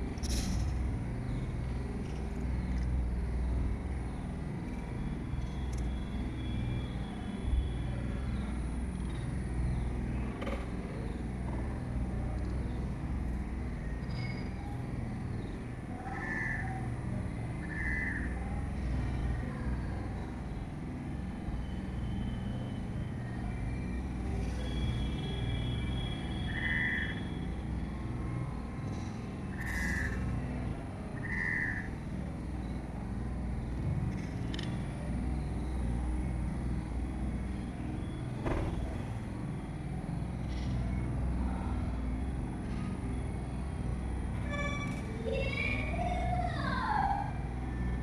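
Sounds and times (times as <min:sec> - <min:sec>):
low outdoor rumble: 0:00.0 - 0:48.0
high chirp-like animal calls: 0:26.4 - 0:27.4, 0:31.2 - 0:31.9.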